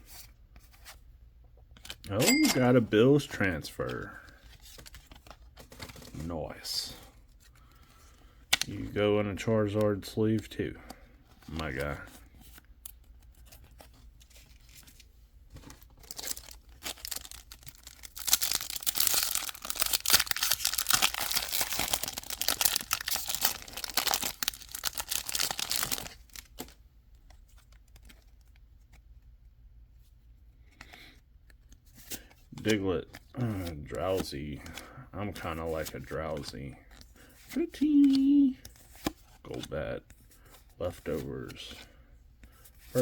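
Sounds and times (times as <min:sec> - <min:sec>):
foil wrapper tearing and crinkling: 0:16.0 - 0:26.7.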